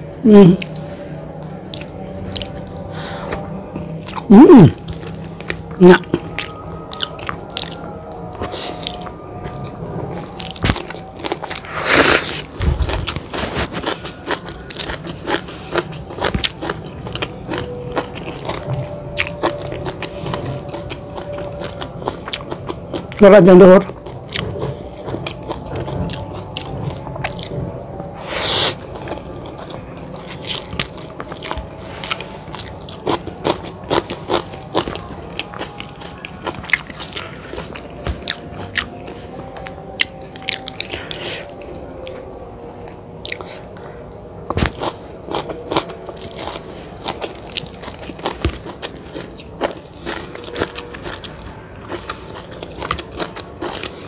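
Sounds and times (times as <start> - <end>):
wet chewing and biting: 10.3 - 23.2, 44.4 - 54.0
crisp crunches of noodles: 10.4 - 23.1.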